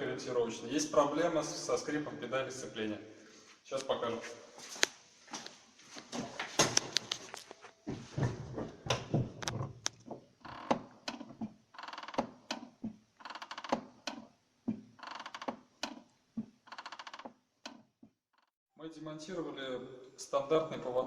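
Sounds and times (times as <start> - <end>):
clutch pedal squeaking: 8.9 - 14.3, 15.0 - 18.5.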